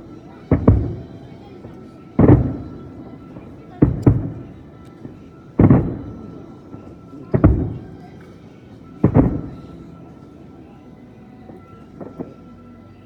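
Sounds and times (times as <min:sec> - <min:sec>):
firework shells booming: 0:00.5 - 0:08.1, 0:09.0 - 0:09.8.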